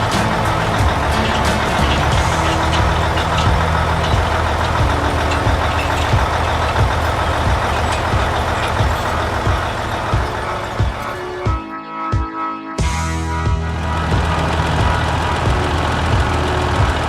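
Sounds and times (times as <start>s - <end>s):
knocks: 0.0s - 11.6s
heavy vehicle engine rumbling: 0.0s - 11.7s, 13.1s - 17.0s
background music: 0.0s - 17.0s.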